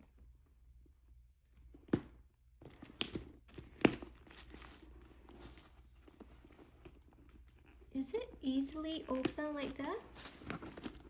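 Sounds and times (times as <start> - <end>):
wrapping crinkling and rustling: 2.6 - 11.0.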